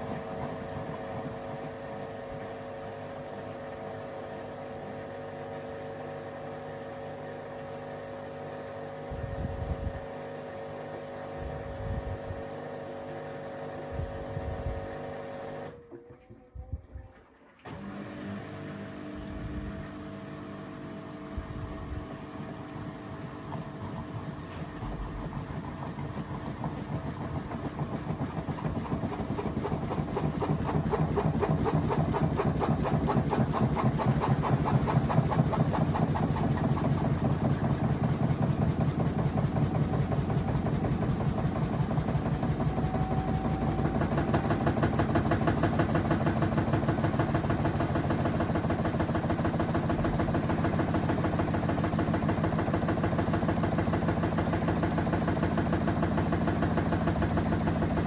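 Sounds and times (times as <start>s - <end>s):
washing machine drum knocking: 23.5s - 58.0s.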